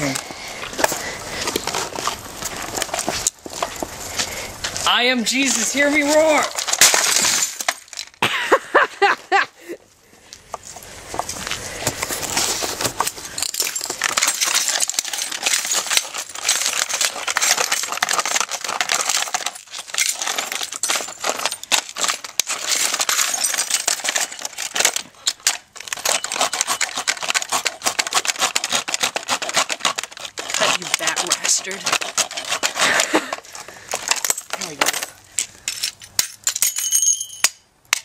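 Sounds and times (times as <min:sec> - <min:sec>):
coffee maker smashing and crunching: 0:05.8 - 0:08.5, 0:11.8 - 0:35.2.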